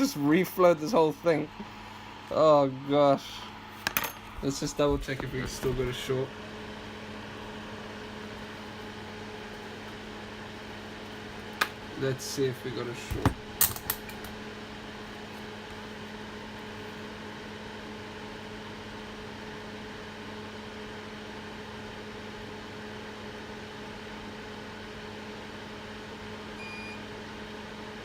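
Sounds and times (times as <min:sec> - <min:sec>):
electrical hum and fan hiss: 0:00.0 - 0:28.0
multimeter beep: 0:26.6 - 0:27.0.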